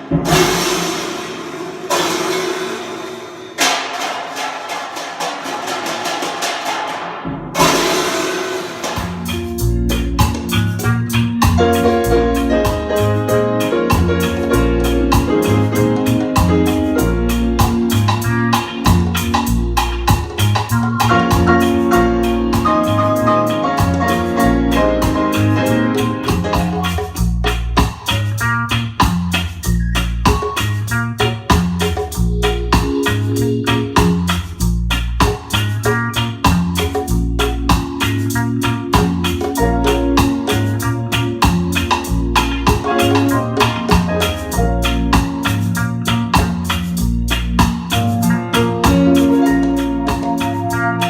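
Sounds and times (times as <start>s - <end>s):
loud percussion hits: 0.0s - 28.2s
recorded music through speakers: 7.6s - 51.0s
steady beat with bass notes: 8.8s - 51.0s.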